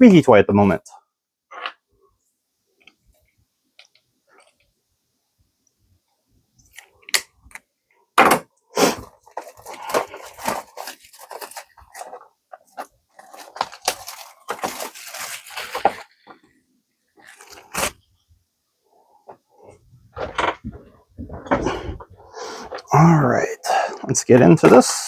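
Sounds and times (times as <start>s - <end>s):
packaging tearing and crinkling: 9.3s - 16.2s, 17.2s - 18.1s.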